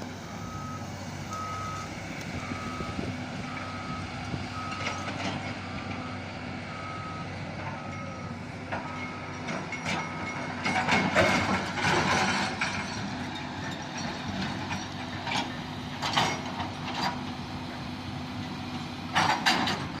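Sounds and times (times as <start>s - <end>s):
diesel machine running: 0.0s - 20.0s
reversing alarm beeping: 0.2s - 10.8s.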